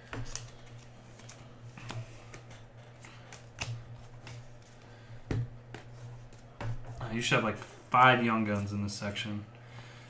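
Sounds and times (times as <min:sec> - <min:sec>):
cards being flipped: 0:00.0 - 0:04.9
steady low hum: 0:00.0 - 0:10.0
card flicks and slaps: 0:01.2 - 0:04.4.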